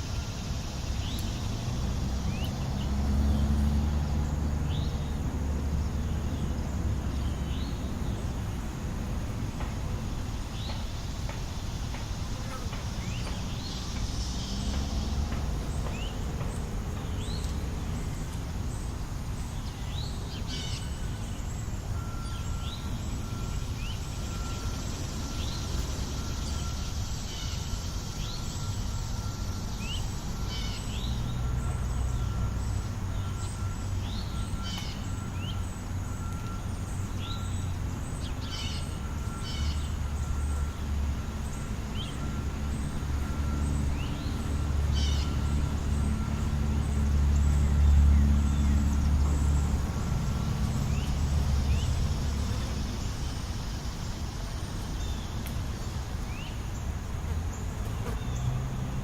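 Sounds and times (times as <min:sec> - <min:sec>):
low rumble of traffic: 0:00.0 - 0:59.0
bird chirping: 0:10.5 - 0:54.0.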